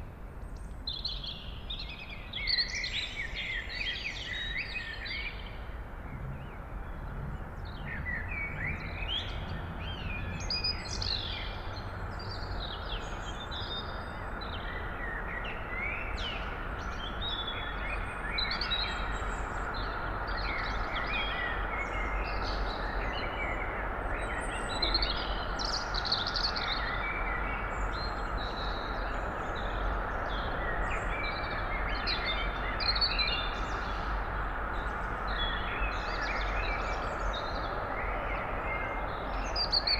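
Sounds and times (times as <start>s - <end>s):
low town background hum: 3.2s - 39.9s.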